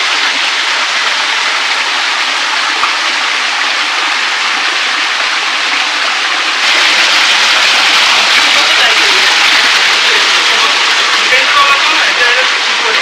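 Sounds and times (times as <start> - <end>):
waterfall rushing: 0.0 - 13.0.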